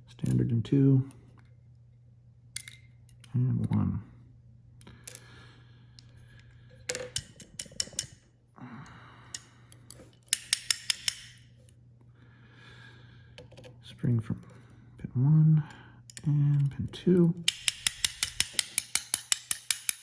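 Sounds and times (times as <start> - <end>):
small metal clicks and taps: 2.6 - 3.8, 6.9 - 8.2, 9.4 - 11.4, 16.1 - 20.0.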